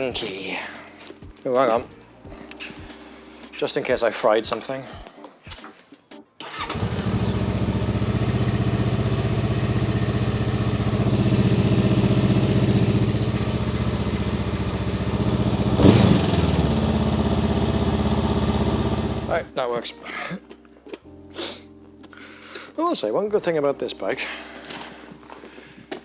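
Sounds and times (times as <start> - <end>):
motorcycle engine starting and idling: 6.4 - 19.5.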